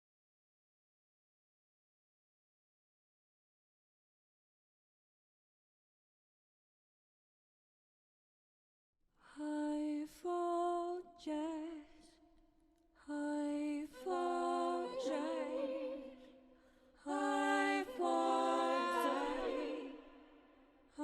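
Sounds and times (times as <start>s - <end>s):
wordless singing voice: 9.2s - 21.0s.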